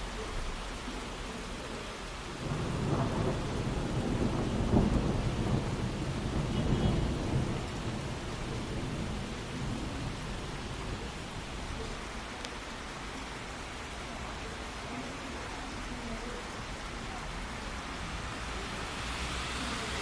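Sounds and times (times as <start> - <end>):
heavy rain falling: 0.0 - 20.0
thunder rumbling: 2.4 - 12.5.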